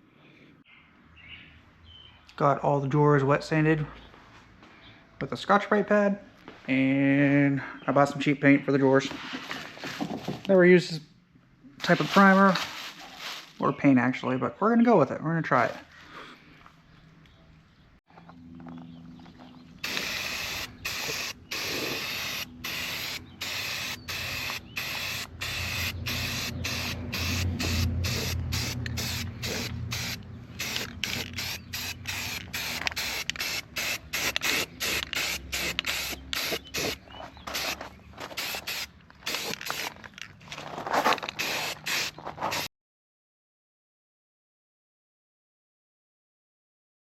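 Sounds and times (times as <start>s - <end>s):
spray paint can hissing: 19.8s - 40.0s, 41.3s - 42.7s.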